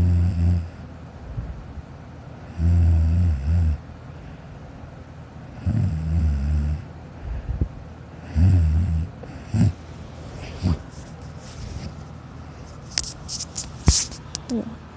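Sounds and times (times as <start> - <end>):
child snoring: 0.0 - 0.8, 2.6 - 3.8, 5.6 - 6.9, 8.2 - 10.9.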